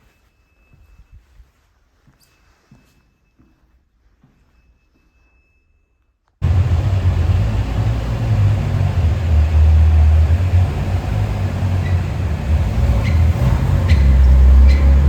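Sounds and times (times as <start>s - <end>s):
car engine rumbling at low revs: 6.4s - 15.0s.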